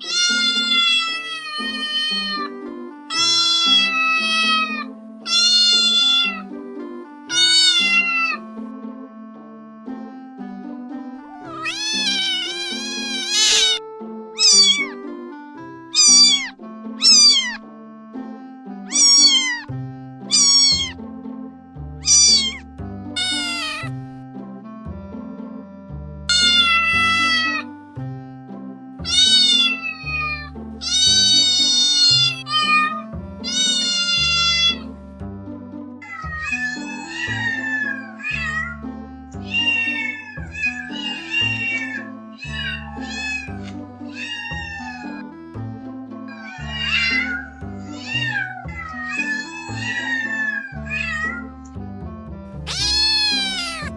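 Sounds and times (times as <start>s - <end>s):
cat meowing: 0.0s - 2.5s, 3.1s - 6.6s, 7.3s - 8.4s, 11.2s - 13.8s, 14.4s - 15.0s, 15.9s - 17.6s, 18.9s - 19.7s, 20.3s - 21.0s, 22.0s - 24.0s, 26.3s - 27.7s, 29.0s - 34.9s, 36.0s - 45.3s, 46.3s - 51.5s, 52.6s - 53.9s
background music with bass line: 9.8s - 31.5s, 45.3s - 48.2s, 50.9s - 53.9s.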